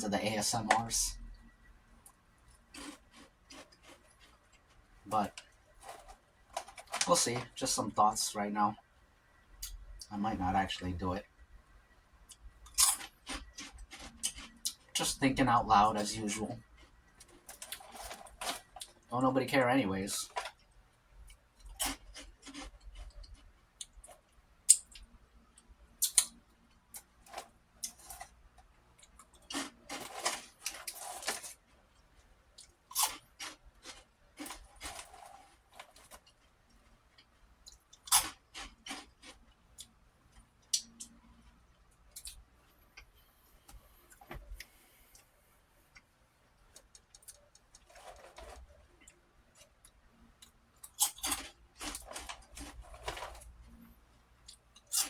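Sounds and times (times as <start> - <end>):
person crunching crackers: 2.7 - 7.5, 12.6 - 15.2, 21.3 - 25.0, 26.9 - 31.8, 32.6 - 36.6, 37.2 - 40.0, 50.8 - 53.7.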